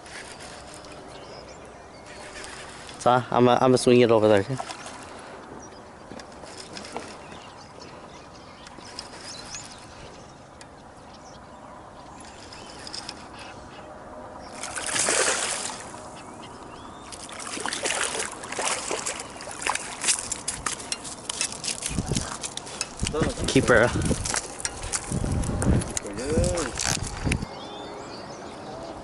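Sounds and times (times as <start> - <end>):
short slaps and splashes: 14.6 - 15.8, 17.1 - 20.8
fish thrashing and splashing water: 14.6 - 16.0, 17.0 - 22.8
loud water splash: 14.6 - 16.0.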